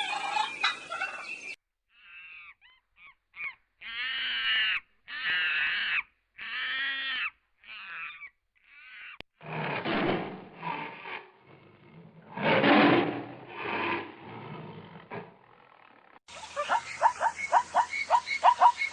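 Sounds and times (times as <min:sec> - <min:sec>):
large fowl calling: 0:00.0 - 0:09.2, 0:16.3 - 0:18.9
big cat growling and roaring: 0:09.4 - 0:16.2.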